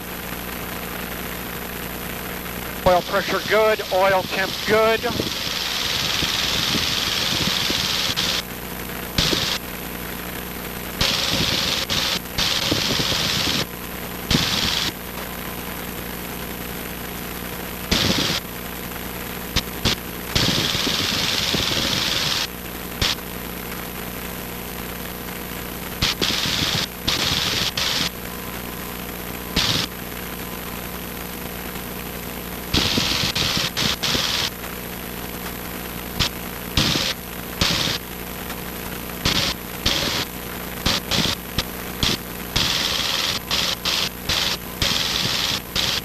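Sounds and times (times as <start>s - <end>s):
airplane engine and propeller drone: 0.0s - 10.2s, 10.8s - 16.6s, 19.4s - 23.2s, 25.9s - 30.8s, 32.7s - 34.7s, 38.8s - 46.0s
short bursts of rushing noise: 2.9s - 8.4s, 36.2s - 38.0s.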